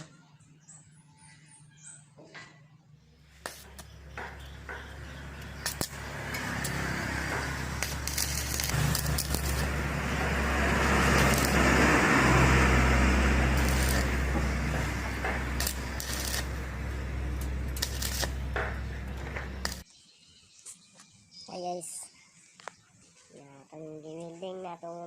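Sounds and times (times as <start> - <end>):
welding arc crackling: 3.3 - 19.8
sharp clicks: 3.4 - 9.8, 13.5 - 19.8
electrical hum: 3.6 - 19.8.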